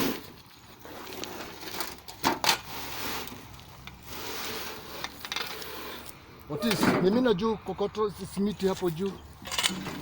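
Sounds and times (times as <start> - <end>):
scraping on cement and gravel: 0.0 - 6.9.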